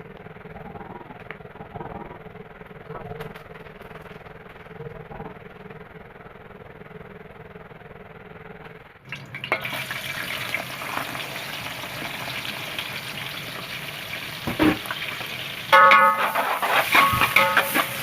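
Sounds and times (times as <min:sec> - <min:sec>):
faint hum: 0:00.0 - 0:18.0
food sizzling in hot oil: 0:09.1 - 0:18.0.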